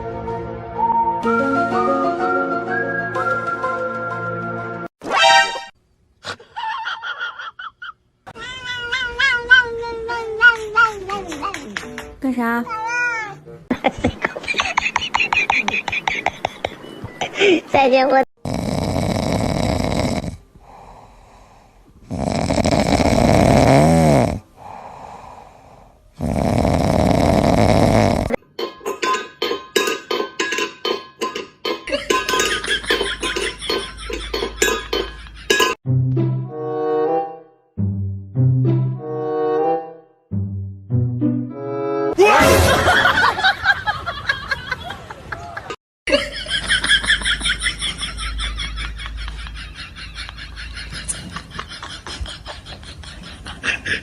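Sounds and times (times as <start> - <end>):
people giggling and laughing: 13.7 - 17.7, 42.6 - 54.0
people talking: 17.7 - 18.3
loud rasping snores: 18.4 - 21.2, 22.0 - 25.5, 26.1 - 28.4
quiet breaths: 20.5 - 22.1, 24.5 - 26.2.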